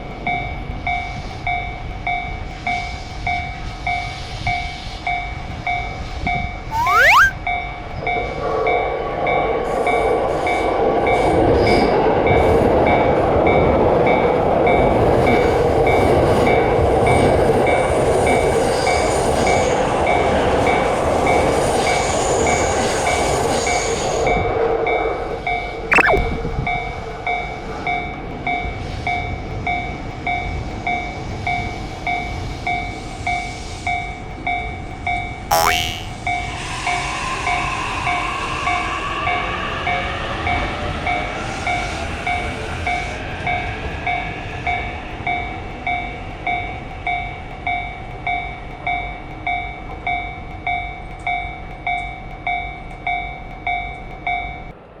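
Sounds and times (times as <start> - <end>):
falling tone: 6.7 - 7.4, 25.9 - 26.3, 35.5 - 36.2
rising tone: 6.7 - 7.4, 25.9 - 26.3, 35.5 - 36.2.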